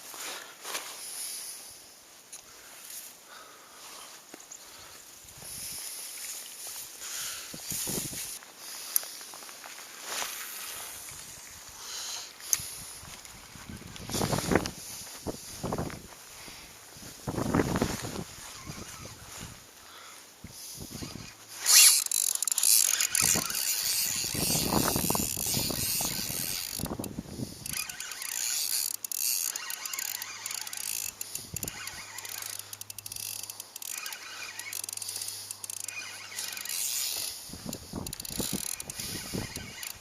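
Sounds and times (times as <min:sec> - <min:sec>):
fishing reel whirring and ratcheting: 0:18.1 - 0:19.3, 0:20.8 - 0:40.0.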